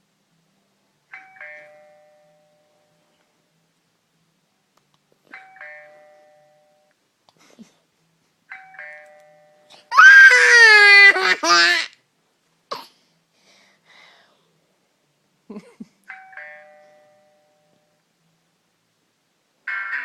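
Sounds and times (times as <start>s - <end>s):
two-note doorbell chime: 1.1s - 3.0s, 5.4s - 6.9s, 16.1s - 17.9s.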